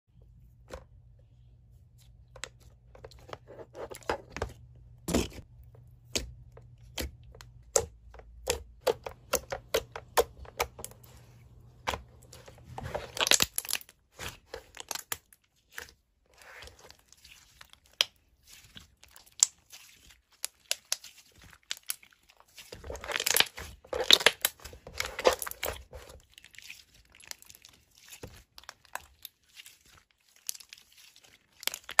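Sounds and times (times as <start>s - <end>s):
crinkling and tearing: 12.4s - 15.4s, 16.4s - 32.0s.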